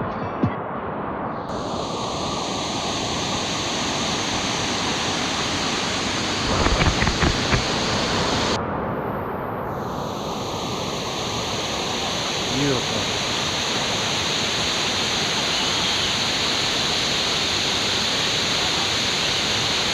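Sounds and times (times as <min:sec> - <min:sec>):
waterfall roaring: 0:01.5 - 0:08.6, 0:10.3 - 0:19.9.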